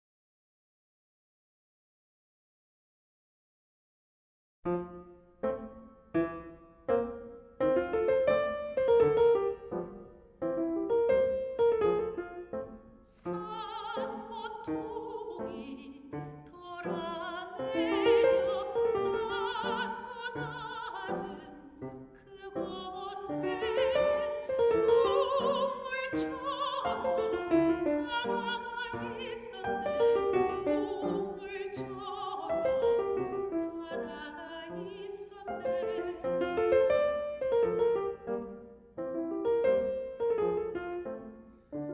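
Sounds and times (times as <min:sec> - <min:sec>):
piano accompaniment: 0:04.7 - 0:41.9
soprano singing with vibrato: 0:13.1 - 0:38.1.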